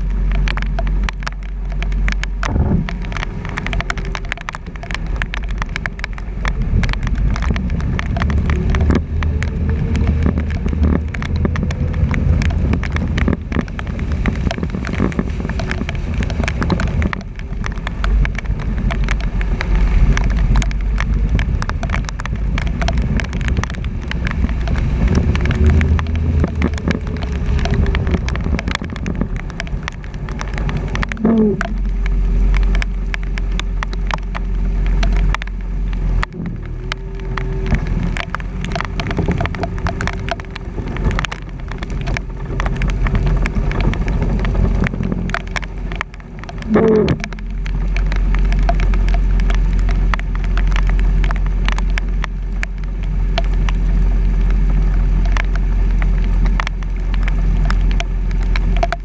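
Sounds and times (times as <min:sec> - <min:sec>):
truck engine drone: 0:00.0 - 0:53.0
rain crackling on camera housing: 0:00.0 - 0:59.0
wet road noise: 0:00.0 - 0:59.0.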